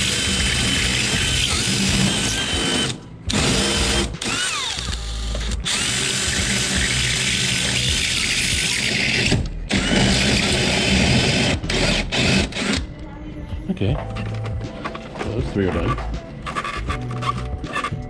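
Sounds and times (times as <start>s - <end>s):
power drill boring through door: 0.0s - 12.8s.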